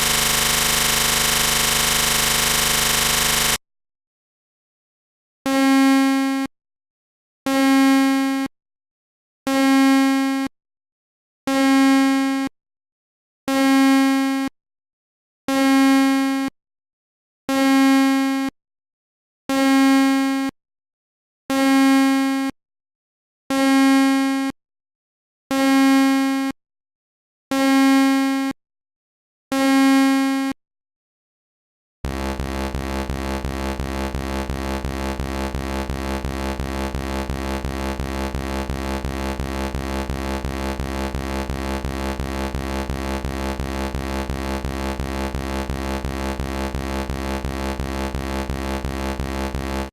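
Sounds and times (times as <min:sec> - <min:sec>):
continuous buzz: 0:00.0 - 0:03.6, 0:32.1 - 0:49.9
low synthesized buzzing tone: 0:00.0 - 0:03.6, 0:32.1 - 0:49.9.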